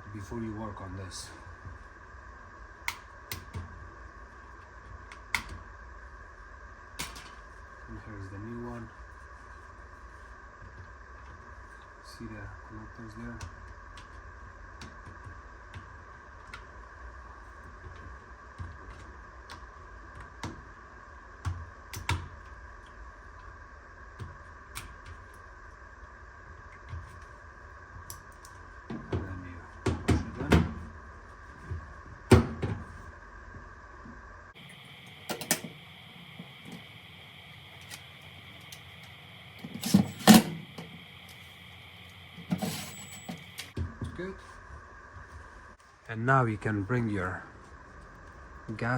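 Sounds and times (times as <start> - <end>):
faint steady hum: 0.0 - 48.9.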